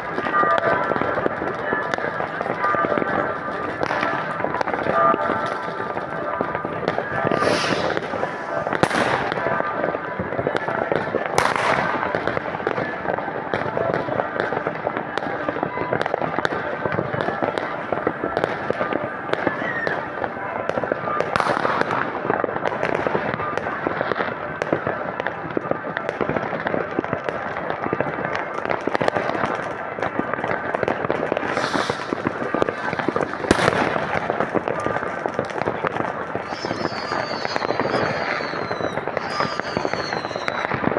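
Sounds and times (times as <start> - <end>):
firecrackers crackling: 0.0 - 40.9
loud firework bangs: 2.6 - 12.8, 20.7 - 23.3, 28.9 - 40.9
loud firework bang: 6.5 - 9.7, 31.3 - 34.7
firework hiss: 7.0 - 9.5, 31.3 - 34.4.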